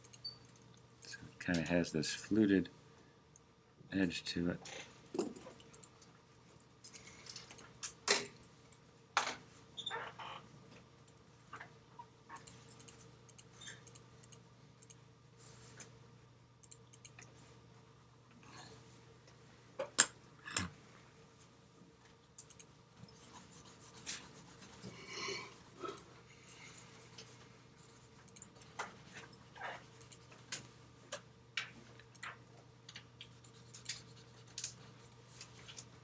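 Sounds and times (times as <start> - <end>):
pencil scratching on paper: 23.2 - 25.8.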